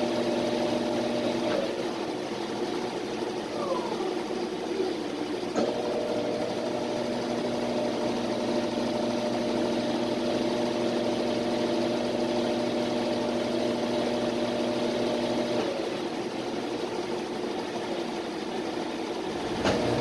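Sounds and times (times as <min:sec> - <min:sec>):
washing machine spinning hum: 0:00.0 - 0:20.0
washing machine motor click: 0:19.4 - 0:20.0.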